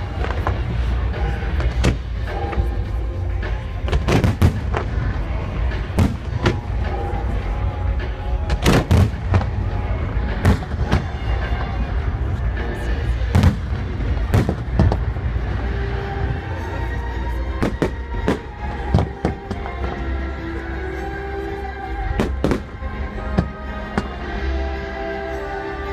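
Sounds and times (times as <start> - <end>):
music playing: 0.0 - 25.9
fireworks bursting: 3.7 - 7.6, 8.2 - 16.8.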